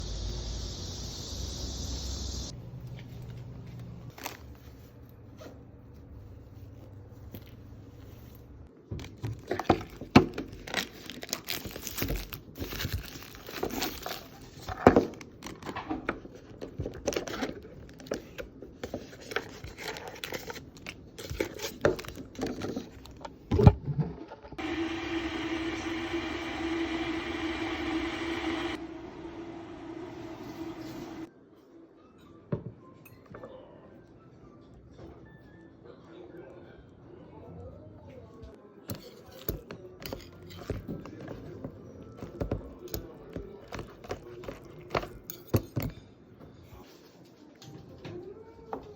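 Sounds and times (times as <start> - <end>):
plastic packaging crinkling: 10.4 - 14.6
steady tonal hum: 24.6 - 31.3.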